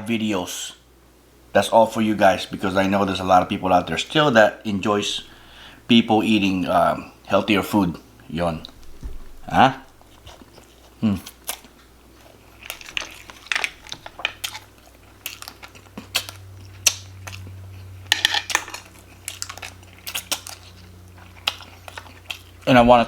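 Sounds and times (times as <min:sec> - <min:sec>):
faint low hum: 0:00.0 - 0:23.0
cutlery clinking against a bowl: 0:18.1 - 0:18.8.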